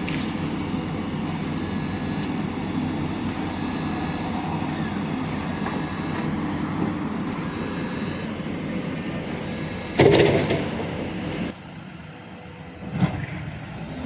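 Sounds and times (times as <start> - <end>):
high-pitched warning buzzer: 0.0 - 10.6, 11.2 - 11.6
diesel engine running: 0.0 - 12.6.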